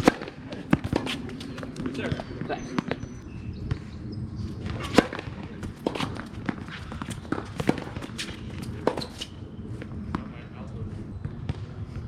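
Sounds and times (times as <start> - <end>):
footsteps on tennis court: 0.0 - 3.0, 4.6 - 10.2
shoe squeak: 8.2 - 9.5.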